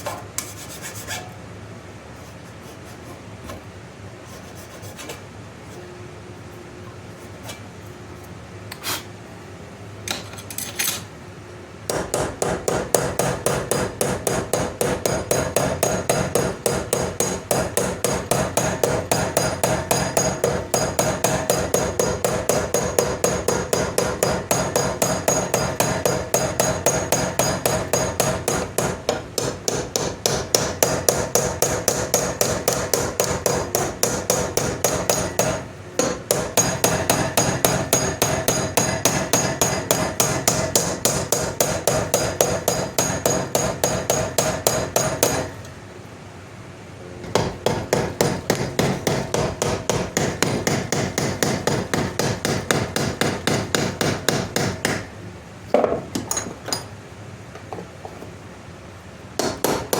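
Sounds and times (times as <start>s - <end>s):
small hammer tapping on metal: 11.9s - 45.5s.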